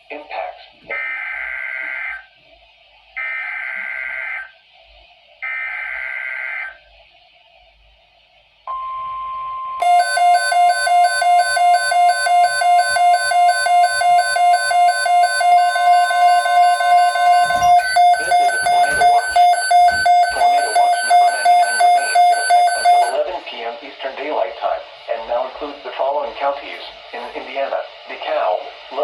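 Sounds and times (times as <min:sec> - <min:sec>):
pulsing electronic alarm beep: 0:08.7 - 0:23.2
steady warning tone: 0:08.7 - 0:23.2
digital data bursts: 0:09.8 - 0:23.2.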